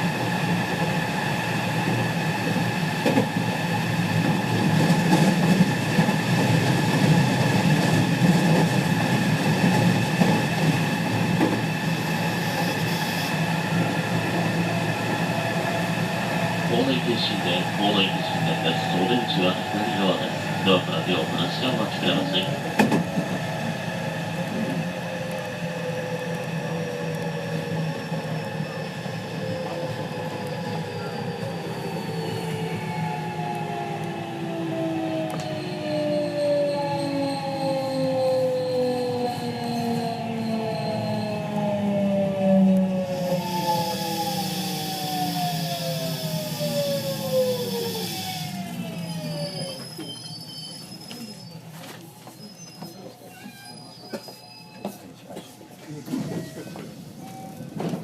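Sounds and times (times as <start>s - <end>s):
train wheels rumbling on rail: 0.0s - 58.0s
steady whining tones: 12.6s - 23.3s.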